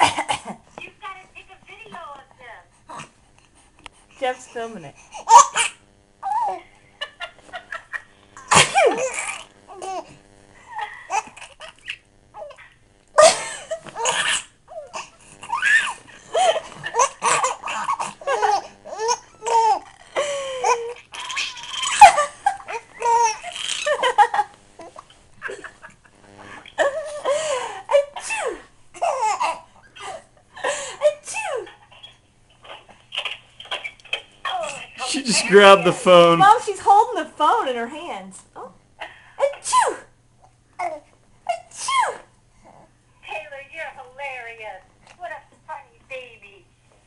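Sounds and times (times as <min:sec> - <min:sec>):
baby laughing: 0:05.3 - 0:06.6, 0:10.8 - 0:24.4
adult fake sneezes and coughs: 0:39.5 - 0:40.1.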